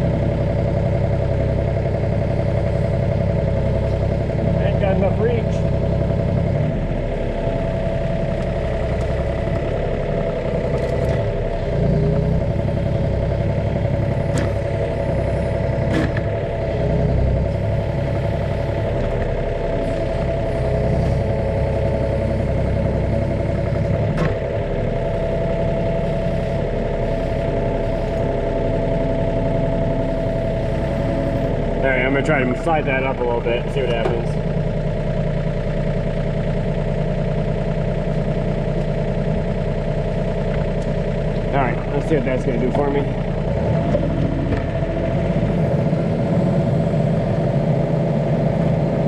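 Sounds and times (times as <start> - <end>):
diesel engine running: 0.0 - 49.0
hydraulic whine: 1.4 - 35.4.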